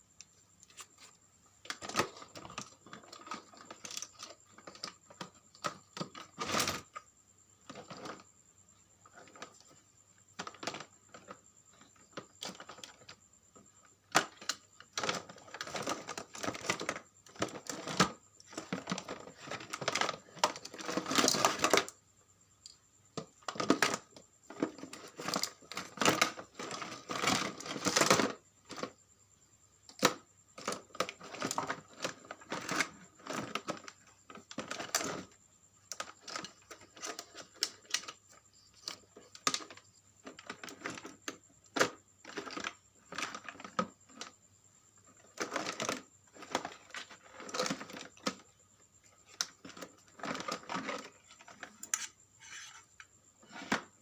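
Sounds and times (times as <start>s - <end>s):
hard plastic parts clicking and rattling: 1.6s - 7.0s, 7.6s - 8.3s, 10.4s - 22.0s, 22.6s - 29.0s, 29.9s - 44.4s, 45.1s - 54.0s.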